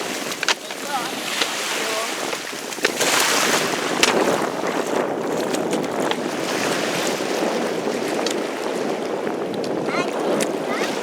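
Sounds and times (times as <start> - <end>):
sharp splashes or knocks: 0.0 - 7.2
waves washing over stony shore: 0.0 - 11.0
wind buffeting microphone: 0.0 - 11.0.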